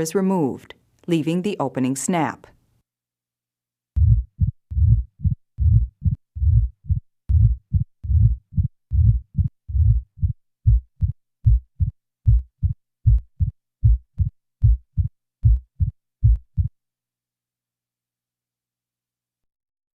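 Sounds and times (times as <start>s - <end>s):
simulated heartbeat: 4.0s - 16.7s.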